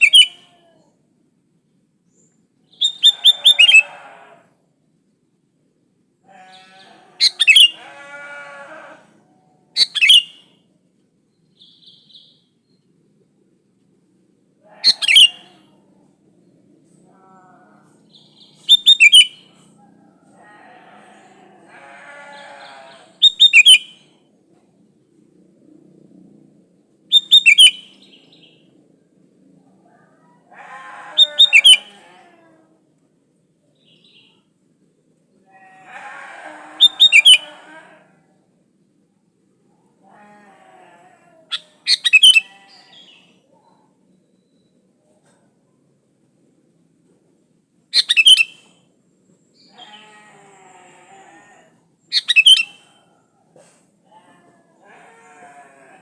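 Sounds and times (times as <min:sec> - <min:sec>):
bird singing whistled notes: 0:02.7 - 0:03.8, 0:09.8 - 0:10.4, 0:18.7 - 0:19.4, 0:23.2 - 0:24.0, 0:27.1 - 0:28.0, 0:48.0 - 0:48.6, 0:52.1 - 0:52.8
faint bird chattering: 0:06.4 - 0:07.8.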